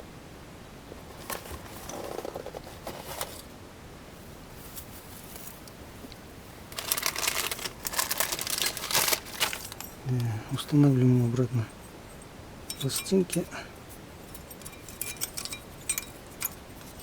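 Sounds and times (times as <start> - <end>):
packaging crinkling and rustling: 1.0 - 3.5, 6.7 - 10.3.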